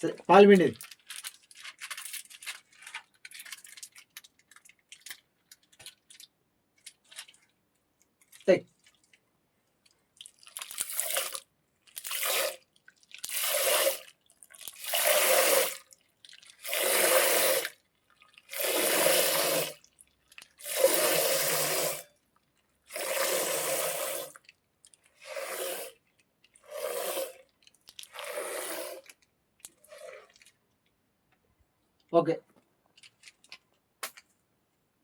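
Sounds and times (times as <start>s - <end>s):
liquid squirting into a container: 6.9s - 30.7s.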